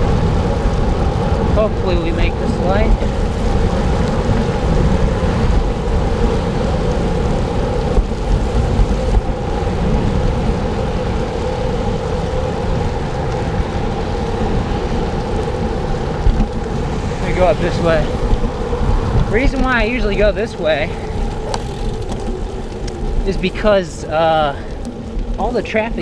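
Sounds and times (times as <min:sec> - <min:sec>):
tyre and road noise: 0:00.0 - 0:26.0
wind rumbling on microphone: 0:00.0 - 0:26.0.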